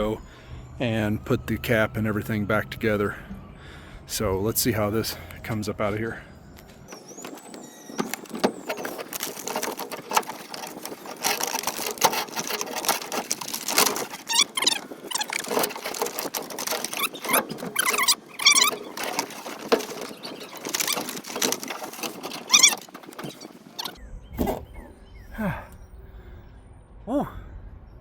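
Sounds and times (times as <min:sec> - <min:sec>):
sheet metal scraping and clattering: 0:07.0 - 0:24.8.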